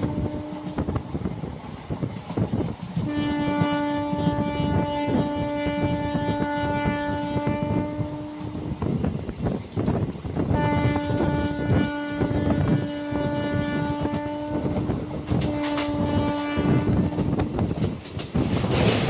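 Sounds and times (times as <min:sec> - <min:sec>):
locomotive horn blast: 0:00.0 - 0:01.0, 0:03.0 - 0:08.8, 0:10.5 - 0:17.4
train wheels clattering over rail joints: 0:13.6 - 0:19.0.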